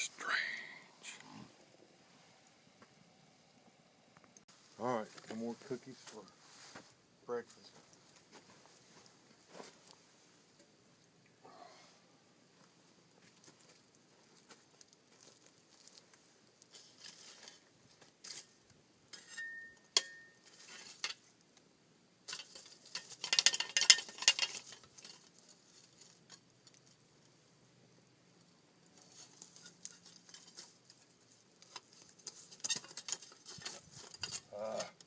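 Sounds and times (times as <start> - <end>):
rustling: 4.5 - 10.6, 12.6 - 21.4, 22.2 - 27.5, 28.4 - 35.0
crinkling: 13.2 - 19.4, 20.3 - 21.4, 22.2 - 27.4, 28.8 - 35.0.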